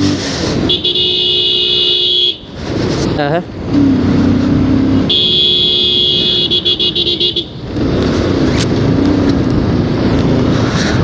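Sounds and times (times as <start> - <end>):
vehicle horn: 0.6 - 2.5, 5.1 - 7.6.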